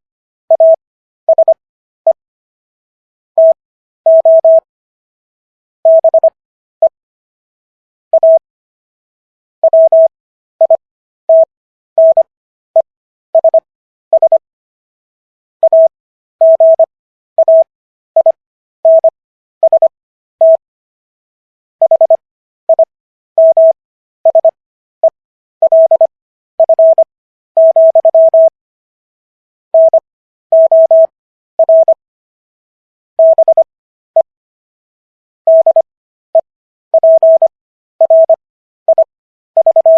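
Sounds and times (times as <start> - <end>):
morse code beeps: 0.5 - 2.2, 3.4 - 4.7, 5.9 - 7.0, 8.2 - 8.4, 9.6 - 12.3, 13.4 - 14.4, 15.6 - 20.6, 21.8 - 28.5, 29.8 - 32.0, 33.2 - 34.3, 35.5 - 35.9, 37.0 - 39.9.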